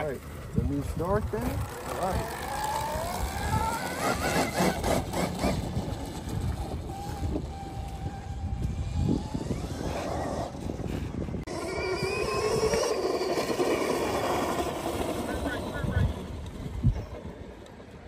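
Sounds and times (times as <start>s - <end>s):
electric dirt bike motor whining: 0.1s - 17.9s.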